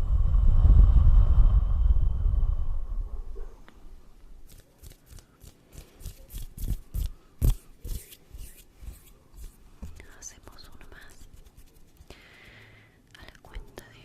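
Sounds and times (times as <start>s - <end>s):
hands rustling and brushing: 4.4s - 12.7s.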